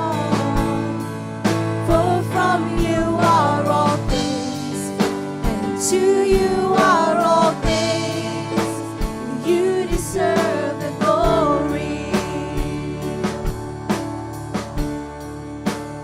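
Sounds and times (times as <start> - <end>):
person singing: 0.0 - 1.1, 1.9 - 13.5
worship band playing: 0.0 - 16.0.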